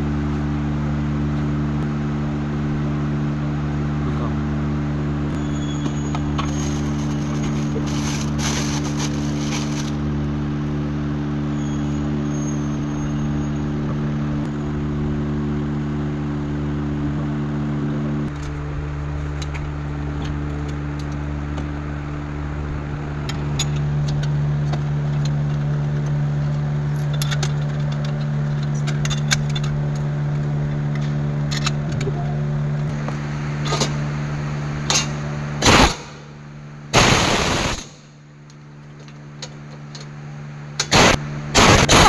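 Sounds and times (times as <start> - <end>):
steady mechanical hum: 0.0 - 42.0
pneumatic impact wrench bursts: 34.9 - 36.2, 36.9 - 38.1, 40.8 - 42.0.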